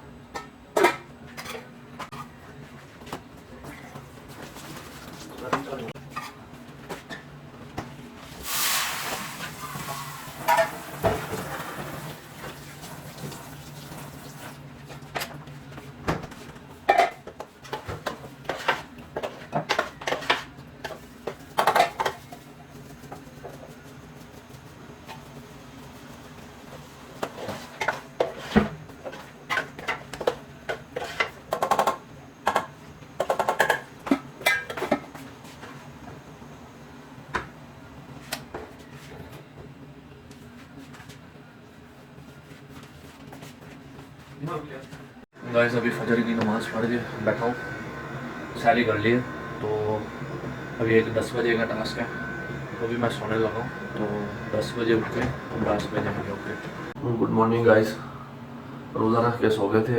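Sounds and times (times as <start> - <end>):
steady low hum: 45.4 - 59.9.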